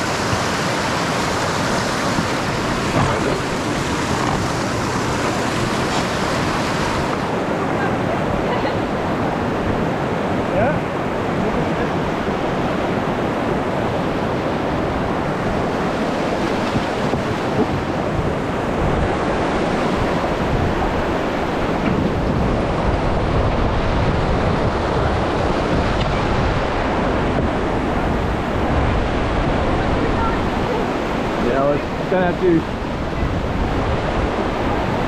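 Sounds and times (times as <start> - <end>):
river water rushing: 0.0 - 35.0
wind noise on microphone: 0.0 - 35.0.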